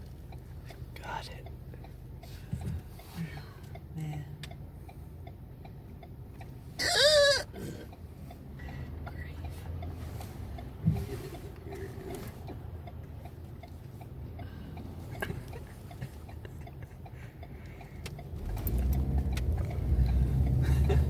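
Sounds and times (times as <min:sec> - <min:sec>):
car cabin hum: 0:00.0 - 0:21.0
person hiccuping: 0:06.8 - 0:07.9.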